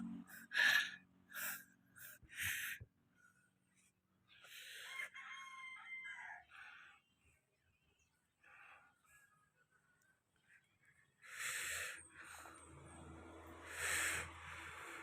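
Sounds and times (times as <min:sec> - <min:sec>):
rooster crowing: 0:04.8 - 0:06.7.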